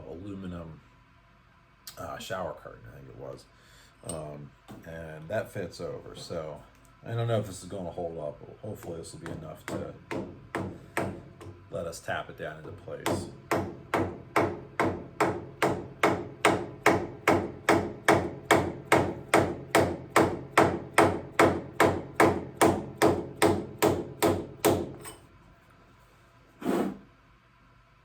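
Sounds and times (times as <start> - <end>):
hammer tapping metal: 8.8 - 11.6, 13.0 - 25.2.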